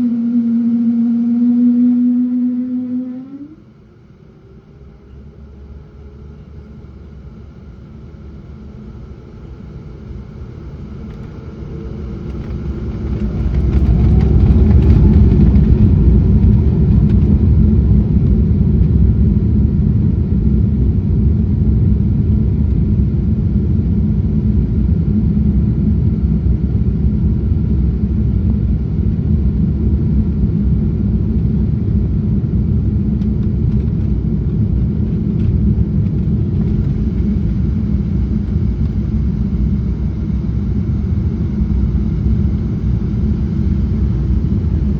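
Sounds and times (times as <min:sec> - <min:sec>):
jet engines spooling up: 0:00.0 - 0:03.7, 0:11.1 - 0:17.6, 0:33.2 - 0:44.9.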